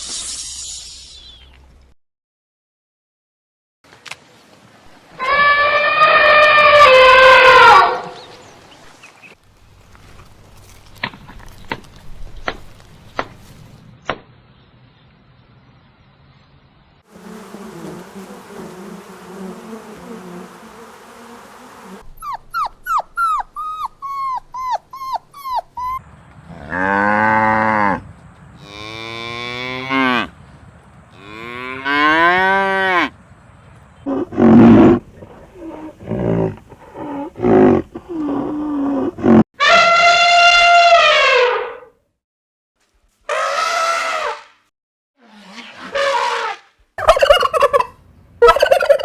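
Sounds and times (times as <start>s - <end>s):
high-pitched animal call: 5.2s - 8.2s, 22.2s - 26.0s, 37.0s - 41.9s.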